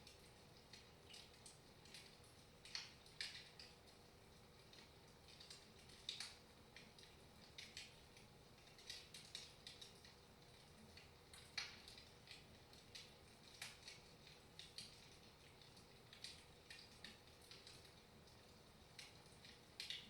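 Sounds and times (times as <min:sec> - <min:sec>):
wood fire crackling: 0:00.0 - 0:20.0.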